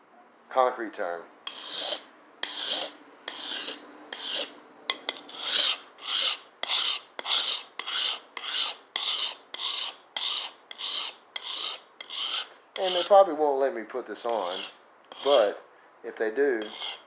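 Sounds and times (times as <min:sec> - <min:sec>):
knife rasping on sharpener: 0:01.4 - 0:13.2, 0:14.2 - 0:15.6, 0:16.6 - 0:17.0.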